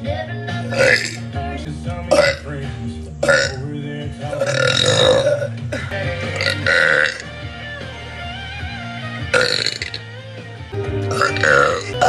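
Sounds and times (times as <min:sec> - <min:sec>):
background music: 0:00.0 - 0:12.0
woman burping loudly: 0:00.7 - 0:01.2, 0:03.2 - 0:03.6, 0:04.4 - 0:07.3, 0:09.3 - 0:10.0, 0:11.1 - 0:12.0.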